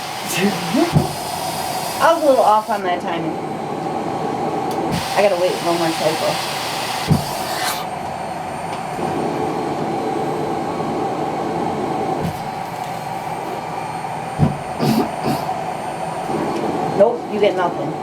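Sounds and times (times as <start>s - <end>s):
blower rushing air through hose: 0.0s - 2.8s, 4.7s - 8.4s, 9.0s - 17.0s
machine thump: 0.9s - 1.2s, 7.1s - 7.3s, 14.4s - 15.1s.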